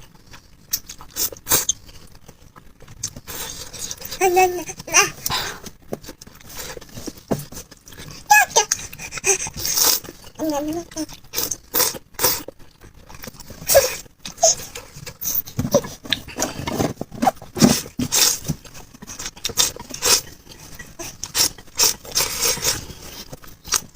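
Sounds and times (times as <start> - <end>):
chewing and mouth clicks: 0.0 - 16.4, 17.9 - 23.9.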